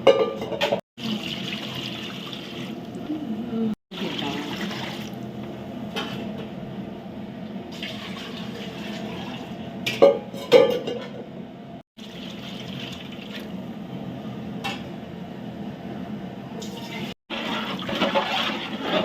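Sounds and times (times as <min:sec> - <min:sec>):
liquid pouring into a pot: 0:01.0 - 0:03.1, 0:04.0 - 0:05.2, 0:07.8 - 0:09.6, 0:12.0 - 0:13.6.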